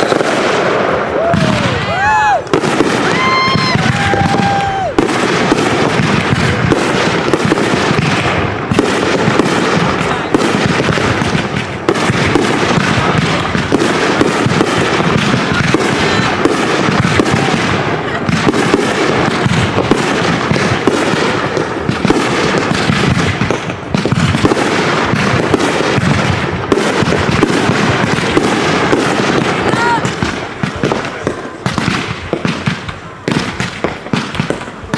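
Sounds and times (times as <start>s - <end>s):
firework whistles: 0.0s - 0.4s
fireworks bangs and crackling: 0.0s - 34.9s.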